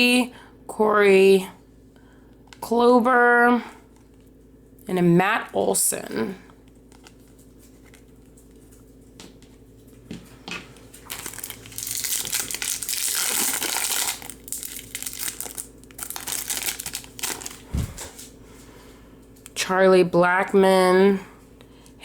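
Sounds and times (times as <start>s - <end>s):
wrapper crinkling and tearing: 10.9s - 18.2s.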